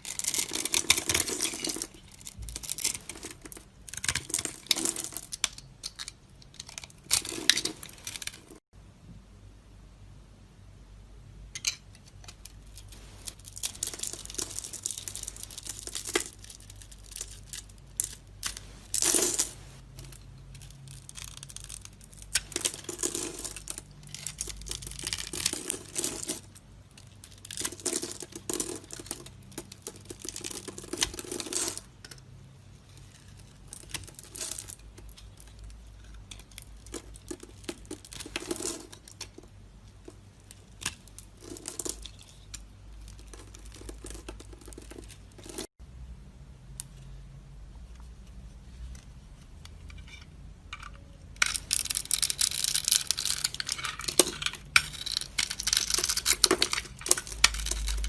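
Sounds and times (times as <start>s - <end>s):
knife scraping soap: 54.8s - 58.0s.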